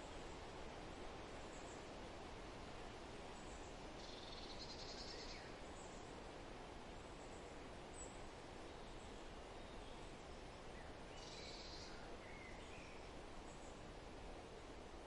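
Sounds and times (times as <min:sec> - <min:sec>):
forest wind: 0:00.0 - 0:15.0
faint bird chirps: 0:03.4 - 0:06.1, 0:10.7 - 0:13.8.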